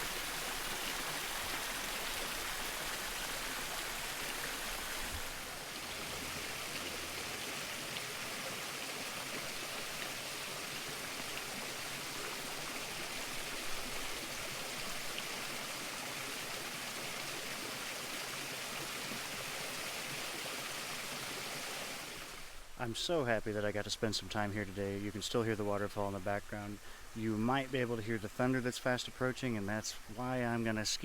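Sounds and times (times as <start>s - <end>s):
small waterfall splashing: 0.0s - 22.7s.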